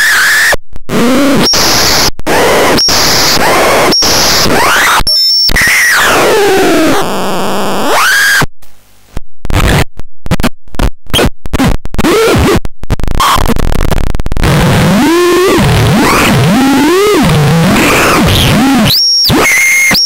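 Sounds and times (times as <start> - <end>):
harsh electronic noise: 0.0 - 8.5, 9.5 - 20.0.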